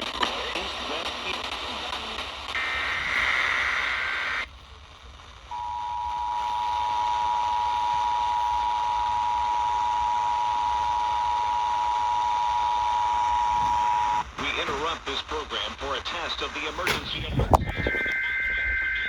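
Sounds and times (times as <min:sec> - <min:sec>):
steady hiss: 0:00.0 - 0:19.0
screechy data burst: 0:05.5 - 0:14.4.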